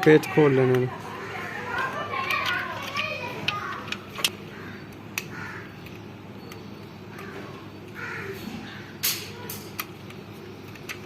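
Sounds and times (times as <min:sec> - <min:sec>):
plastic housing clicks and clatter: 0:00.0 - 0:00.9, 0:01.7 - 0:04.4
crows cawing: 0:01.0 - 0:03.7, 0:04.4 - 0:05.8, 0:07.1 - 0:09.4.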